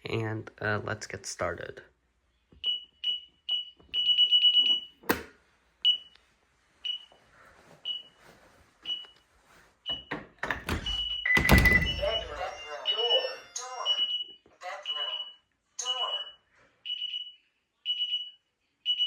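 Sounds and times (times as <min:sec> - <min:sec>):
alarm panel beeping: 0:09.9 - 0:14.2.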